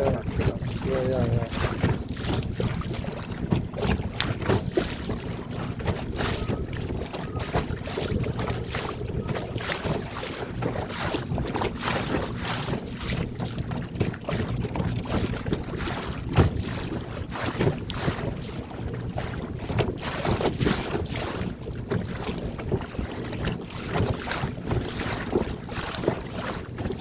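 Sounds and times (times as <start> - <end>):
steady low hum: 0.0 - 19.6.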